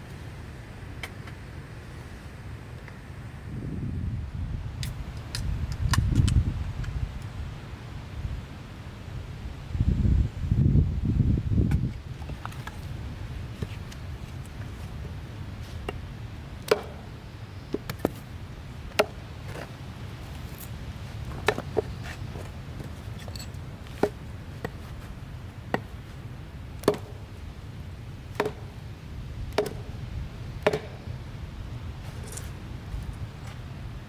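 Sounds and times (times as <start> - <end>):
steady low rumble: 9.3 - 34.0
chopping knocks: 16.7 - 17.1, 18.9 - 19.7, 21.3 - 21.9, 24.0 - 24.8, 26.8 - 27.2, 28.4 - 28.8, 29.6 - 29.9, 30.6 - 31.0.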